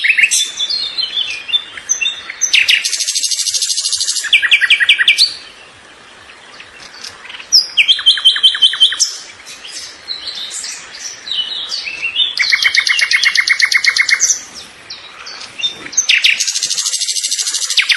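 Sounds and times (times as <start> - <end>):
fast bird trills: 0.0 - 5.4, 7.0 - 17.9
songbirds chirping and singing: 0.0 - 17.9.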